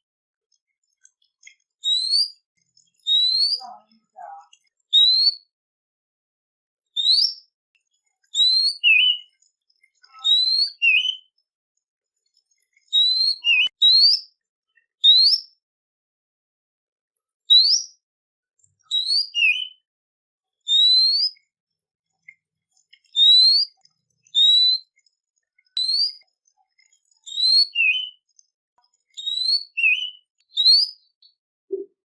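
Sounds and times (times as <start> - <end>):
songbird whistled notes: 1.8 - 3.7, 4.9 - 5.5, 7.0 - 7.5, 8.4 - 9.4, 10.2 - 11.3, 13.0 - 14.3, 15.0 - 15.6, 17.5 - 18.0, 18.9 - 19.8, 20.7 - 21.4, 23.1 - 23.8, 24.4 - 24.9, 25.8 - 26.2, 27.3 - 28.2, 29.2 - 31.0.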